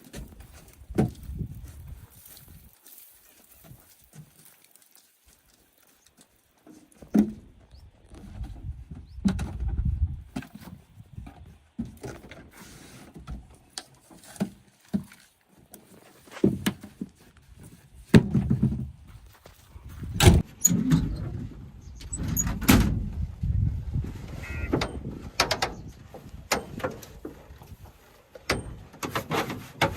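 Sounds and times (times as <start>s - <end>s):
backhoe bucket clanks and squeaks: 20.4s - 22.9s, 24.4s - 27.5s, 28.4s - 29.9s.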